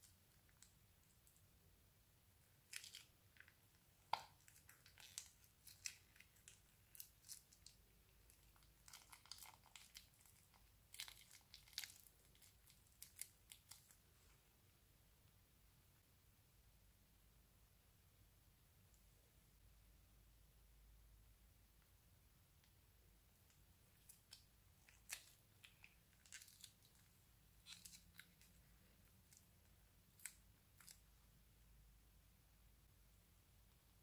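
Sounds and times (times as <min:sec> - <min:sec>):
crunchy slime crackling: 0:02.4 - 0:14.0, 0:23.9 - 0:31.1.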